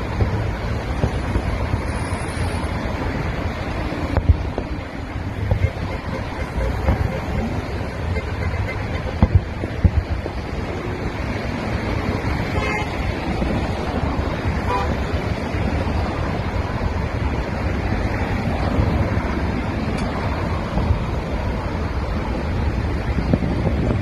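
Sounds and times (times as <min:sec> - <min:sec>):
road traffic rushing: 0:00.0 - 0:24.0
wind on microphone: 0:00.0 - 0:24.0
car horn toots: 0:05.5 - 0:09.3, 0:12.5 - 0:13.0, 0:14.6 - 0:15.0.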